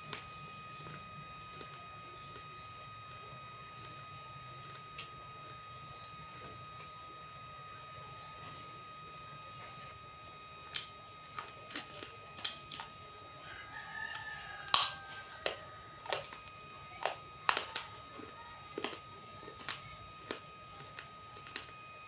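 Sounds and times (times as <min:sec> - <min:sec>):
chewing crunches: 0:10.7 - 0:22.0
rooster crowing faintly: 0:13.2 - 0:17.2.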